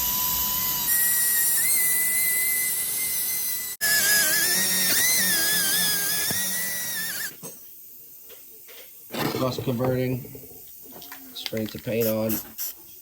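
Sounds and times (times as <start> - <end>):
rotary tool whining on metal: 0.0 - 7.5.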